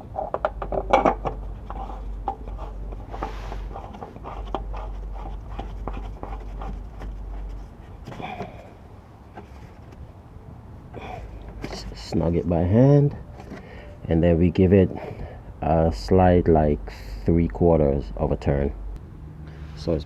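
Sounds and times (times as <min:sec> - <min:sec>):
filter cap scraping and clicking: 0:00.2 - 0:08.5.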